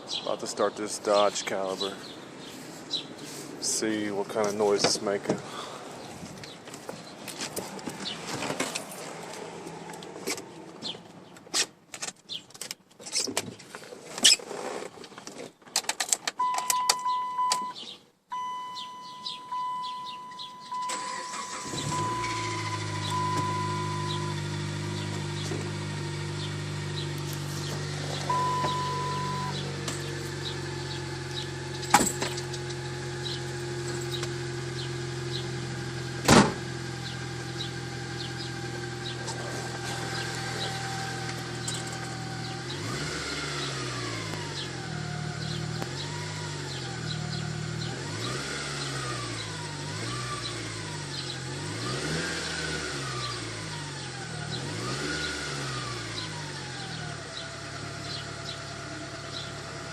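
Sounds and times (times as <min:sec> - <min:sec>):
car engine starting and idling: 0:15.9 - 0:59.9
faint engine whine: 0:18.4 - 0:48.2
high beeping chime: 0:23.1 - 0:24.4, 0:28.3 - 0:29.6.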